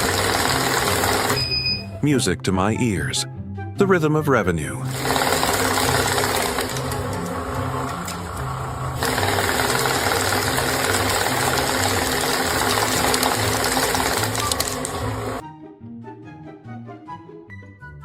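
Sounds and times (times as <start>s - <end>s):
machine rattling clatter: 0.0s - 1.5s, 4.9s - 15.4s.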